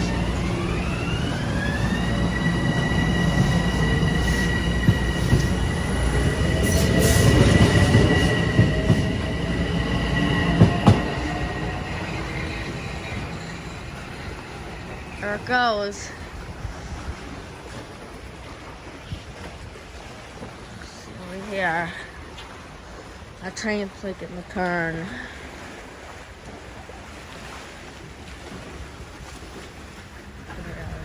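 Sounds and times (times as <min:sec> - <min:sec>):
electric train passing: 0:00.0 - 0:17.6.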